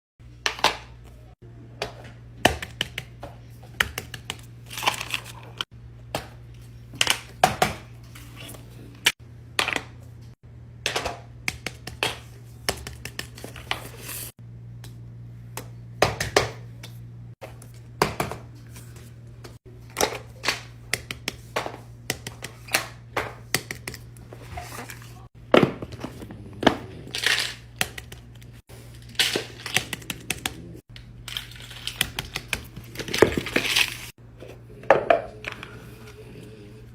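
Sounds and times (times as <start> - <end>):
tape and paper crinkling and tearing: 4.7 - 5.7, 31.2 - 34.2.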